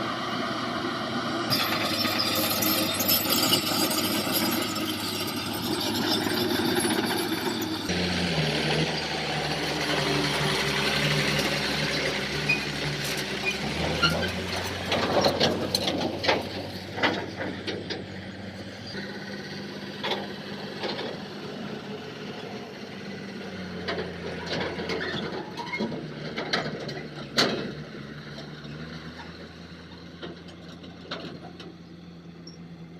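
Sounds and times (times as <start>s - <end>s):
diesel machinery engine: 0.0s - 32.9s
metallic clanks and squeaks: 1.5s - 7.9s, 11.3s - 19.2s, 23.9s - 29.5s, 30.1s - 32.7s.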